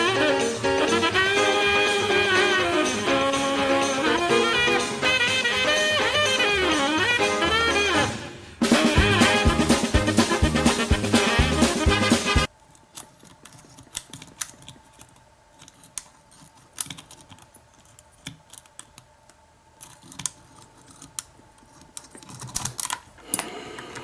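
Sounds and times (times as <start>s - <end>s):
lock picks clicking and scraping: 12.5s - 24.0s.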